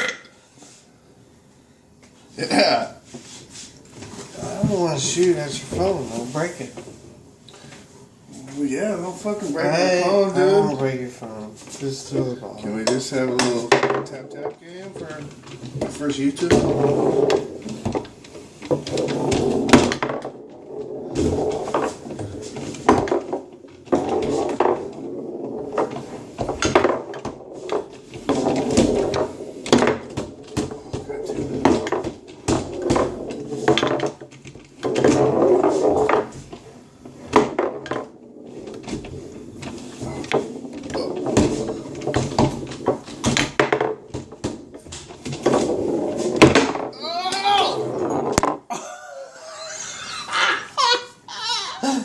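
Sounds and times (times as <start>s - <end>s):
foosball rods sliding and clacking: 3.0s - 48.7s, 49.4s - 51.3s
ball rattling and rolling: 3.1s - 51.7s
foosball ball cracking off table: 12.8s - 14.1s, 15.4s - 36.6s, 37.2s - 47.0s, 47.8s - 48.7s.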